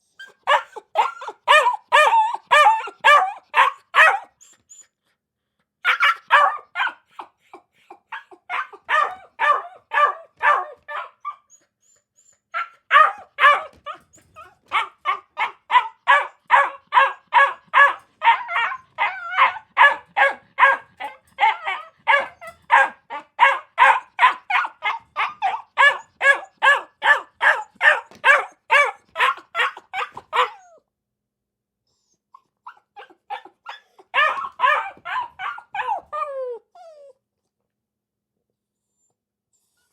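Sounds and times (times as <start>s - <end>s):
dog barking: 0.4s - 4.3s, 5.8s - 7.2s, 8.1s - 11.4s, 12.6s - 14.0s, 14.7s - 30.6s, 33.0s - 36.0s.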